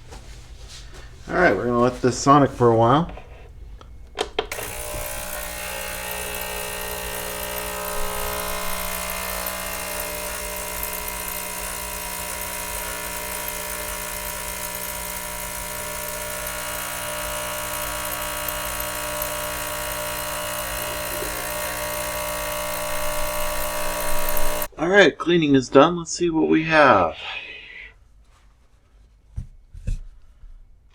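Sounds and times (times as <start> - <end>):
ultrasonic cleaner humming: 4.4 - 24.7.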